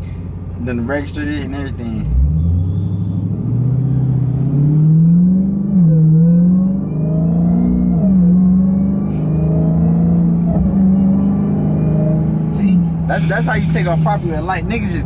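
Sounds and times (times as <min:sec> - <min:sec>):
car engine accelerating: 0:00.0 - 0:15.0
supercharger whine: 0:01.6 - 0:14.2.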